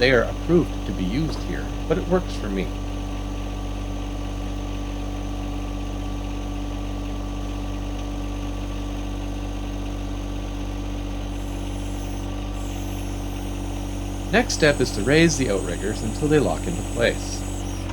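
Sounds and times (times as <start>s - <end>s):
tractor diesel engine idling: 0.0s - 17.9s.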